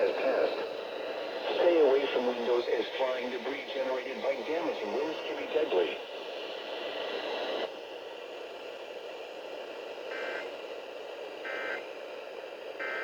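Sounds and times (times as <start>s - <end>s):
radio hiss: 0.0s - 13.0s.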